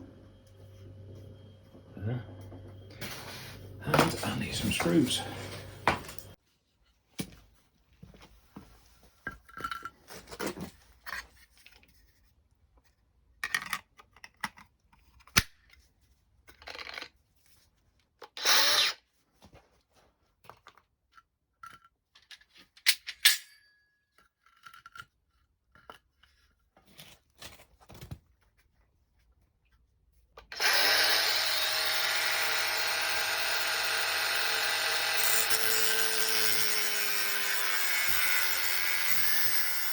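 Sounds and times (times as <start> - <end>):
power tool motor running: 30.5 - 39.9.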